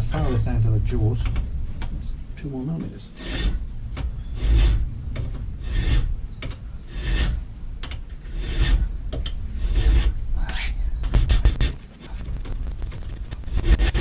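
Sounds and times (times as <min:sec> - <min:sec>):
hand file filing metal: 0:03.2 - 0:03.6, 0:04.4 - 0:04.8, 0:05.6 - 0:06.1, 0:06.9 - 0:07.4, 0:08.2 - 0:08.9, 0:09.6 - 0:10.2.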